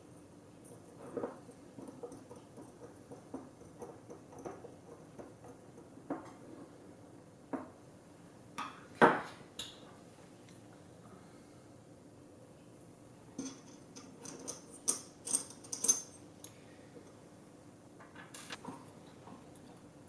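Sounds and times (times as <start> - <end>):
small tools clicking and tapping: 0.7 - 6.4, 13.4 - 17.2.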